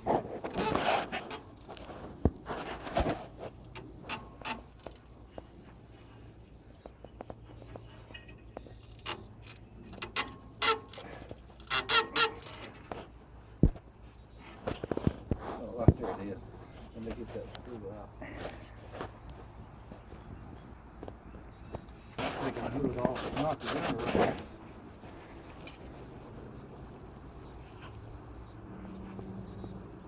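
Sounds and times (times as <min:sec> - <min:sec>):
short squeaks: 0:00.4 - 0:01.9, 0:02.6 - 0:13.2, 0:14.0 - 0:15.0, 0:21.3 - 0:25.9, 0:27.3 - 0:29.9.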